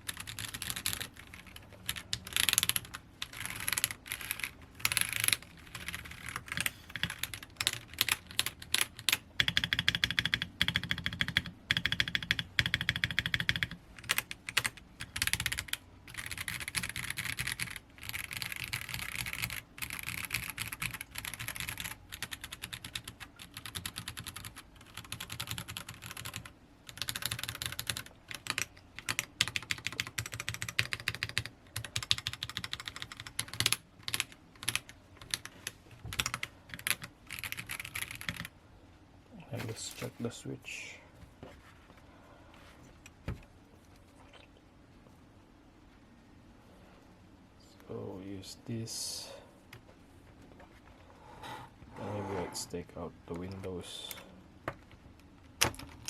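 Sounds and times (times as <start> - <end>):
mechanical keyboard typing: 0.0 - 38.5, 55.4 - 56.0.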